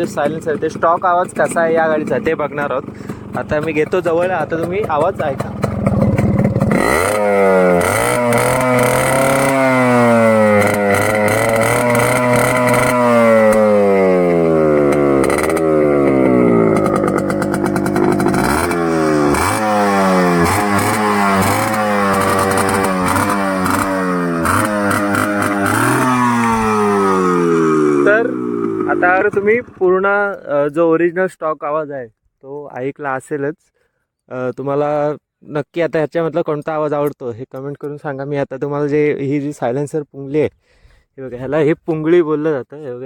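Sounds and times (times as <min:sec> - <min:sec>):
two-stroke engine revving: 0:00.0 - 0:30.1.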